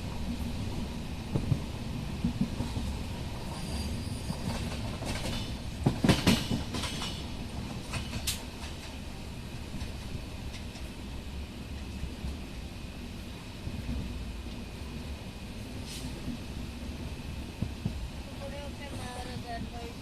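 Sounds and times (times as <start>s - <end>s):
train rumbling on rails: 0.0s - 20.0s
wheels clattering over rail joints: 3.5s - 9.0s
brief metallic squeal: 3.6s - 4.4s.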